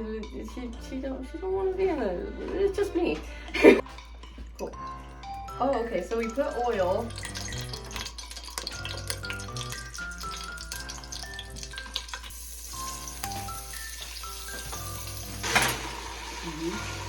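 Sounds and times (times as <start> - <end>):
background music with stepped melody: 0.0 - 17.0
hot oil sizzling in a pan: 6.5 - 17.0.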